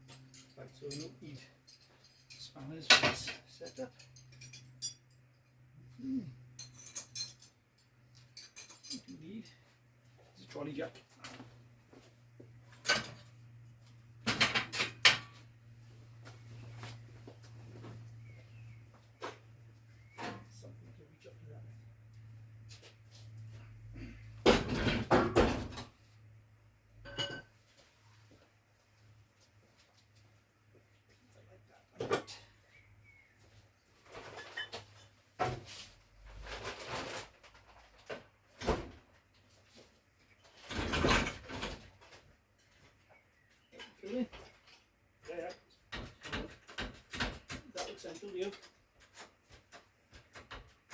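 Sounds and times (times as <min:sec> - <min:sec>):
scraping and rustling: 0:33.9 - 0:38.5.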